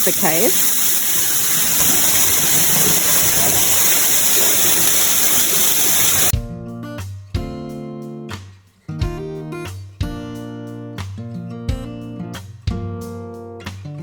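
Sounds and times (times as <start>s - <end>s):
water rushing down cascade: 0.0s - 6.3s
acoustic guitar music: 0.0s - 14.0s.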